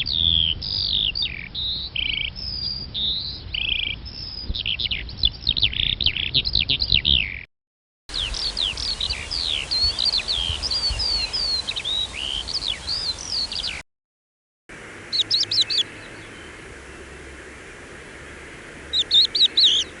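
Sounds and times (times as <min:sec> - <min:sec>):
songbirds chirping and singing: 0:00.0 - 0:07.5, 0:08.1 - 0:13.8, 0:15.1 - 0:17.2, 0:18.9 - 0:20.0
steady background hiss: 0:14.7 - 0:20.0.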